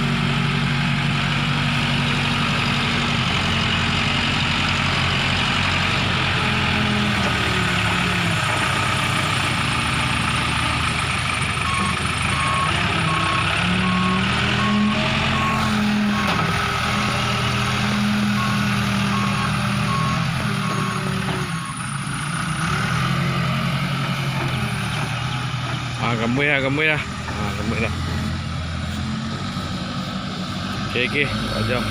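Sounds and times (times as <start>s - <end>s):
diesel engine under load: 0.0s - 31.9s
reversing alarm beeping: 11.6s - 16.6s, 18.3s - 22.1s.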